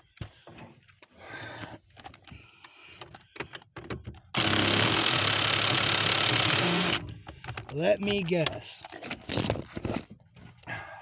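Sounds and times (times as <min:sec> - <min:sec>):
power tool spinning: 0:04.4 - 0:07.0.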